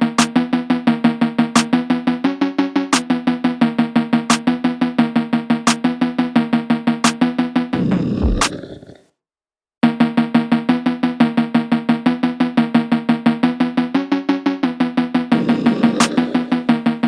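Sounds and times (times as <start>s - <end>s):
instrumental music with steady beat: 0.0s - 8.6s.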